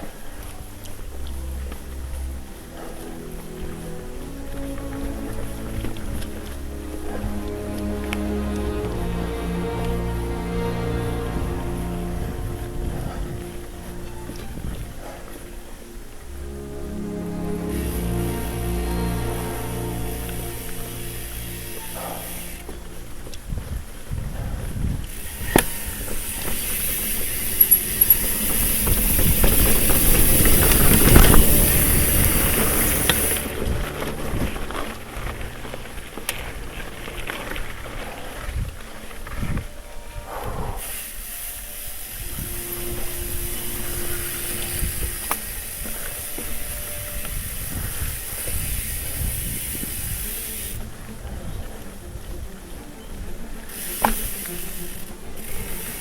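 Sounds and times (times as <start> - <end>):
high hiss: 0.0 - 24.1, 24.7 - 35.5, 40.1 - 51.1, 53.6 - 56.0
wind: 0.0 - 56.0
bike tyre rumble on dirt: 19.4 - 56.0
wind rushing over microphone: 23.2 - 26.6, 27.2 - 35.4, 46.6 - 53.5
bike tyres rumbling on dirt: 23.3 - 39.9.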